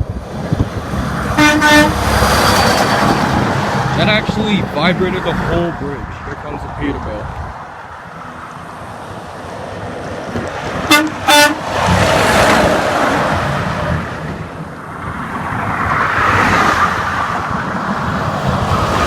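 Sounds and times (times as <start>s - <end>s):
heavy traffic rumbling past: 0.0s - 19.0s
truck horn toots: 1.3s - 2.1s, 10.9s - 11.7s.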